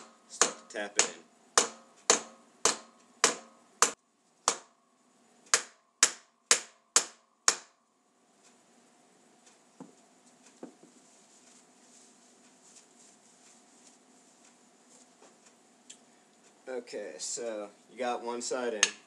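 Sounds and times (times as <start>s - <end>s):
hammer tapping on wood: 0.4s - 4.7s
faint knocks: 10.6s - 11.0s.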